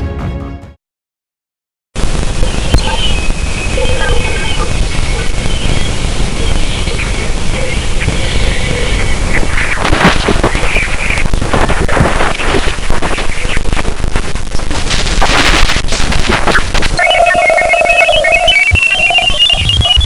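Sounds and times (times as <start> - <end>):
crackling radio static: 2.0 - 20.0
rising beeps: 17.0 - 20.0.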